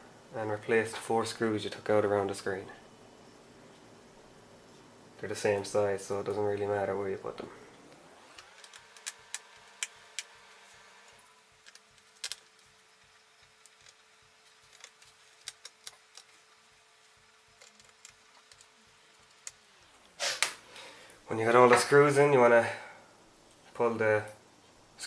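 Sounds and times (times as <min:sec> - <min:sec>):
screwdriver and tiny screws clicking: 0:08.4 - 0:10.3, 0:11.6 - 0:12.7.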